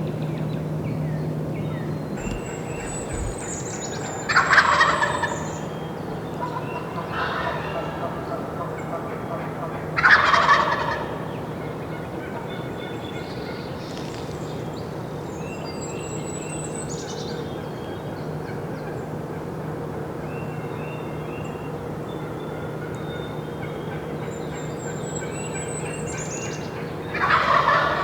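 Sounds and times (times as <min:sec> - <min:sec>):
turkey gobbling: 0:02.2 - 0:03.6, 0:27.2 - 0:28.0
faint songbird chirps: 0:02.2 - 0:03.9.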